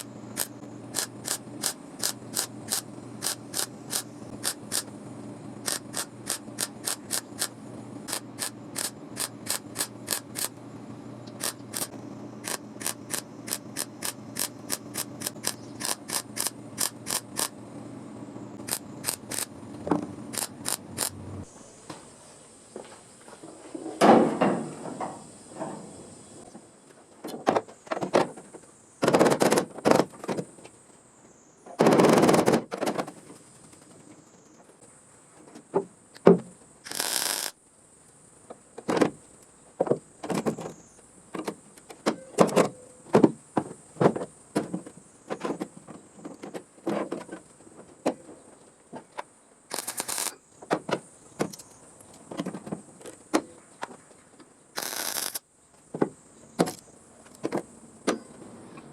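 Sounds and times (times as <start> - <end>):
harsh bursts of noise: 0.0 - 4.9, 5.6 - 10.6, 11.4 - 17.6, 18.6 - 19.6, 20.3 - 21.3, 36.9 - 37.6, 49.7 - 50.4, 54.8 - 55.4.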